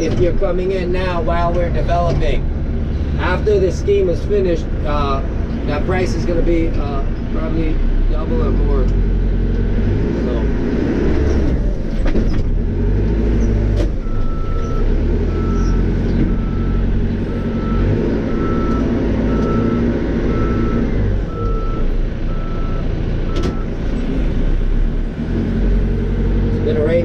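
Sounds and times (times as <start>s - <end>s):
diesel engine running: 0.0s - 27.0s
reverse alarm beeping: 14.0s - 23.7s.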